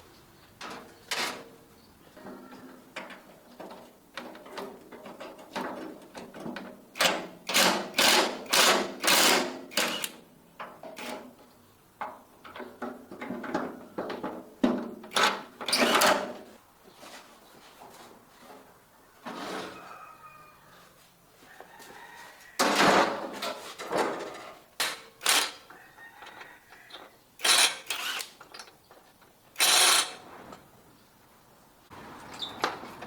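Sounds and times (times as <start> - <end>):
hand tool scraping: 29.6 - 30.6.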